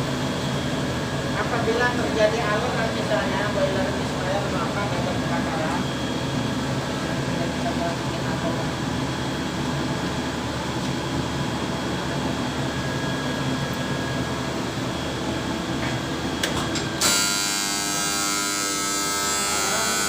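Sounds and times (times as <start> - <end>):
steam boiler burner hum: 0.0 - 20.0
loud electric alarm buzzer: 14.1 - 20.0.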